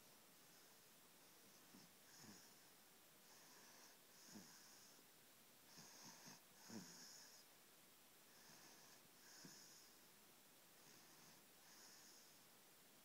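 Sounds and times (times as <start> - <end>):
baby snoring faintly: 1.3 - 5.0, 5.7 - 7.5, 8.3 - 10.0, 10.8 - 12.5.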